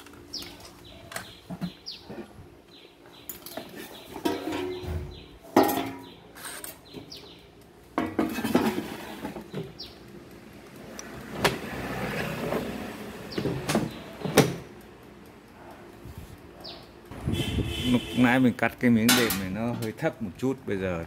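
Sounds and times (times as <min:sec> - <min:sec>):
small parts and tools rattling: 0:03.1 - 0:11.4.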